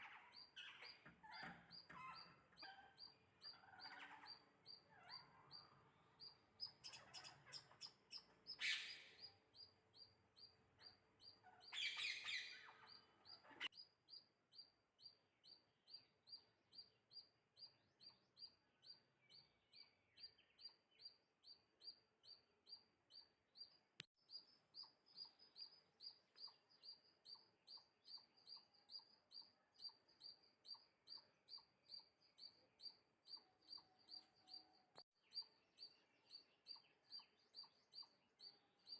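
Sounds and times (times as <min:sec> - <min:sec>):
small bird chirping: 0:00.0 - 0:38.9.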